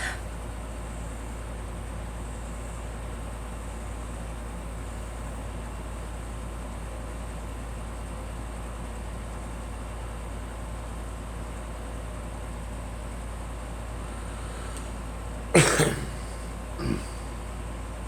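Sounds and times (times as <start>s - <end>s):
low background hum: 0.0s - 18.0s
girl coughing: 15.6s - 17.2s.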